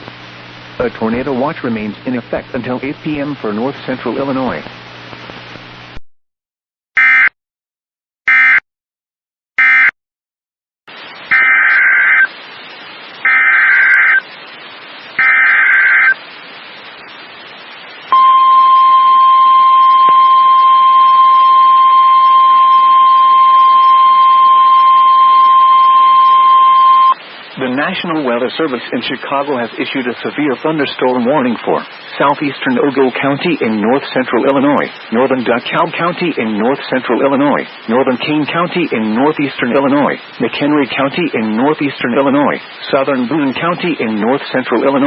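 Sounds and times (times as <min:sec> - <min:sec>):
radio hiss: 0:00.0 - 0:06.0, 0:10.9 - 0:45.0
data bursts: 0:13.2 - 0:14.3, 0:15.2 - 0:16.2.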